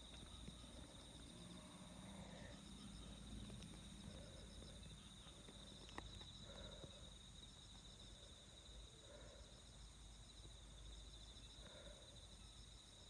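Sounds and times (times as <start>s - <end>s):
night insects chirring: 0.0s - 13.0s.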